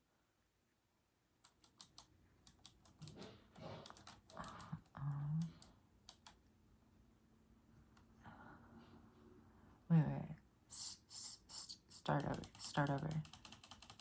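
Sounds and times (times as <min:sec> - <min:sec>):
mechanical keyboard typing: 0:01.5 - 0:04.7, 0:05.4 - 0:06.4, 0:12.1 - 0:14.0.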